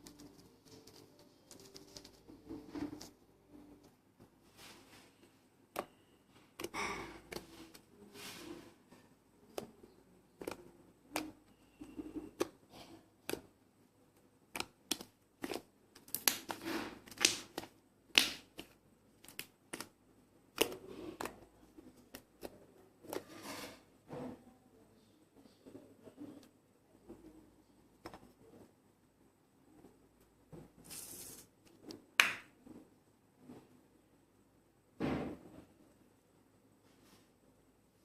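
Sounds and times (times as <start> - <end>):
slime clicking and popping: 10.4 - 12.6, 14.5 - 19.9.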